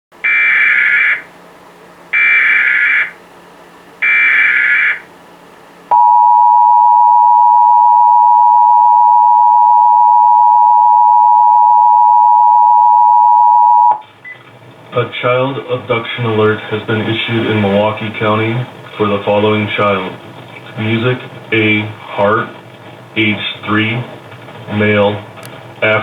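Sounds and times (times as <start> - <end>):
warbling digital data tones: 4.0 - 5.0
two-tone attention signal: 5.9 - 14.4.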